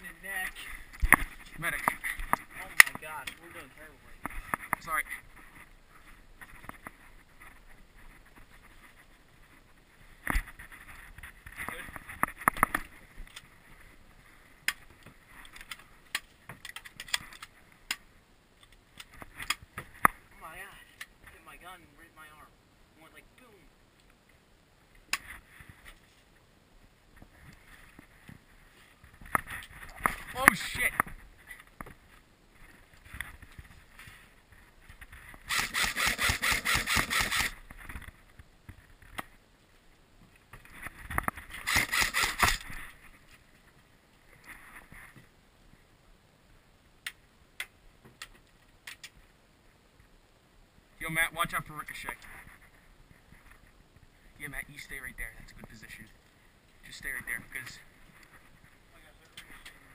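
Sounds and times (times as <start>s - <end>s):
airsoft gun rapid firing: 35.5s - 37.5s, 41.6s - 42.6s.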